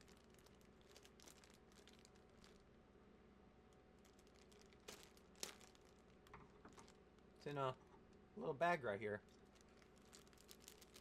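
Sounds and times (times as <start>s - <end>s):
plastic packaging crinkling: 0.0s - 2.7s, 4.0s - 7.6s, 9.3s - 11.0s.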